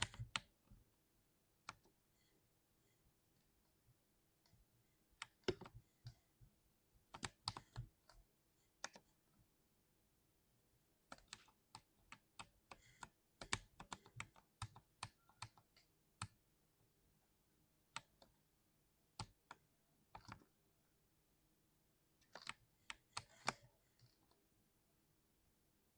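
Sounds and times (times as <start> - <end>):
mechanical keyboard typing: 0.0 - 0.4, 11.1 - 15.7.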